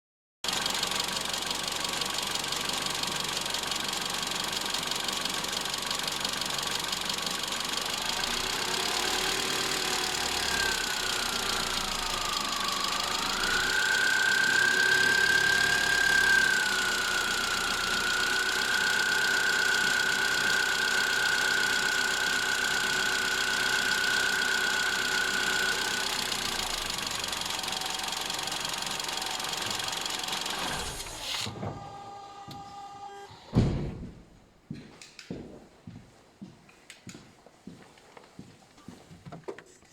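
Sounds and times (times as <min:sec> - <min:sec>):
car engine idling: 0:00.5 - 0:31.2.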